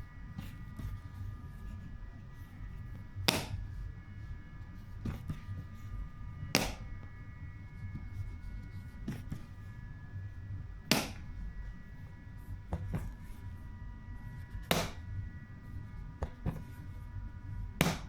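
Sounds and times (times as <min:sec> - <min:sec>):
magnetic box lid snapping shut: 0:14.7 - 0:15.0.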